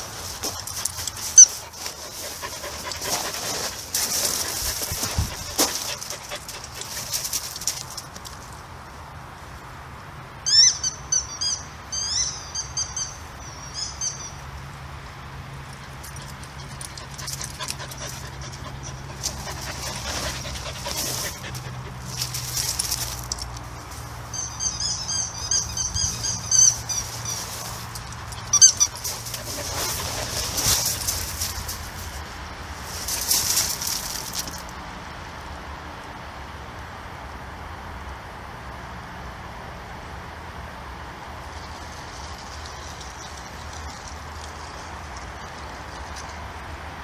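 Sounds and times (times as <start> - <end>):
short high-pitched squeaks: 0.5 - 3.7, 24.4 - 31.1.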